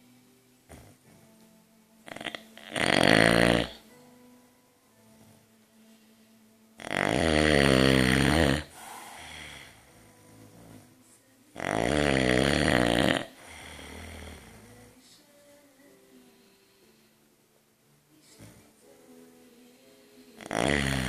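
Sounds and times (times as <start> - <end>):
loud snoring: 2.1 - 3.8, 6.8 - 10.9, 11.6 - 14.8, 20.4 - 21.0
soft breath: 5.2 - 6.6, 8.7 - 11.0, 13.4 - 14.9, 16.0 - 17.4.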